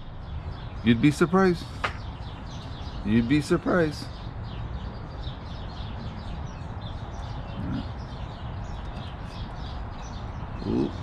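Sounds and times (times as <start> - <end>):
outdoor background noise: 0.0 - 11.0
small birds chirping: 0.0 - 11.0
short low grunt: 7.6 - 8.0.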